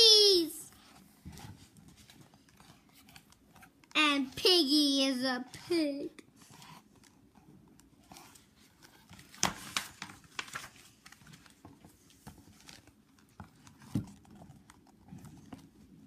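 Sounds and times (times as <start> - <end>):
paper rustling as pages turn: 0.0 - 4.6, 5.4 - 16.0.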